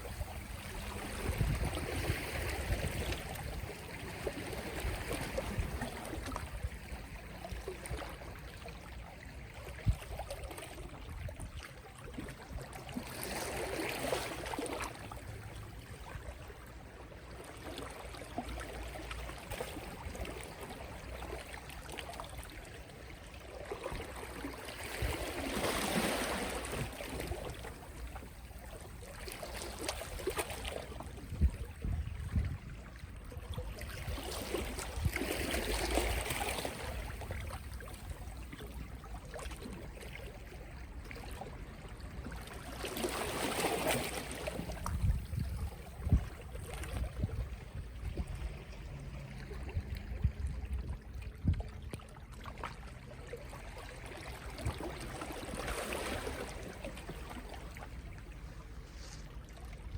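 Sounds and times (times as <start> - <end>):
sea waves lapping on shore: 0.0 - 59.9
steady low rumble: 47.2 - 51.9.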